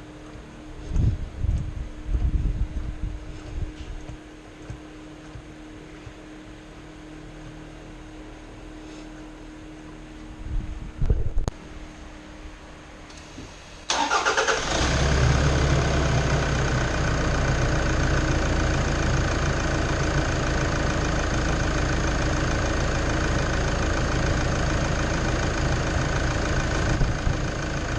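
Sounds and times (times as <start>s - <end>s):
diesel engine idling: 13.5s - 27.9s
engine cranking: 13.9s - 16.6s.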